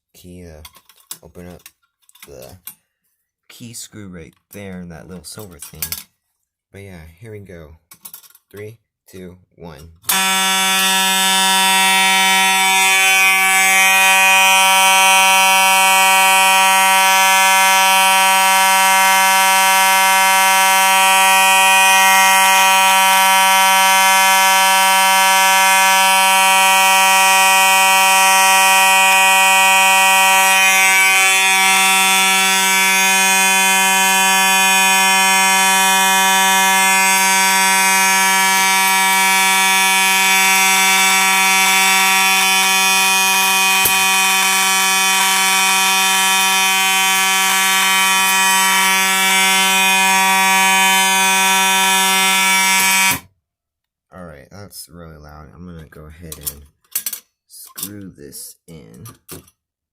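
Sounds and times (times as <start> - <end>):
fire alarm horn buzzing: 10.0 - 53.4.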